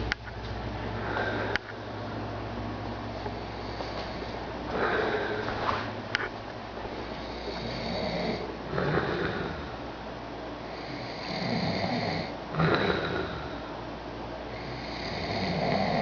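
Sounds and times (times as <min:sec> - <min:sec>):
person snoring: 0:03.4 - 0:05.6, 0:07.2 - 0:09.8, 0:10.7 - 0:13.7, 0:14.5 - 0:16.0.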